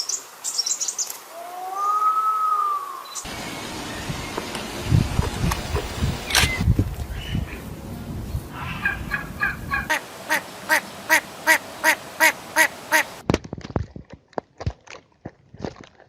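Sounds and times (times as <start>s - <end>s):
sharp clicks: 5.4s - 6.7s.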